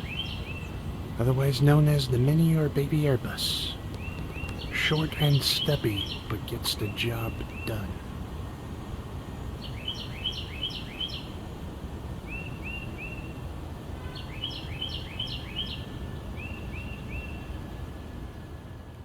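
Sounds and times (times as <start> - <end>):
songbird whistling: 0.0 - 0.8, 3.6 - 7.9, 9.6 - 11.4, 12.3 - 13.4, 14.0 - 17.6.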